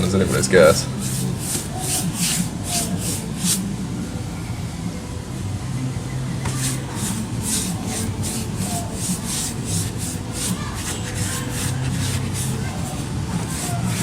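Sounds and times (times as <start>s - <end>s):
paintbrush swishing on plastic: 0.0s - 3.7s, 6.5s - 14.0s
low steady hum: 0.0s - 14.0s.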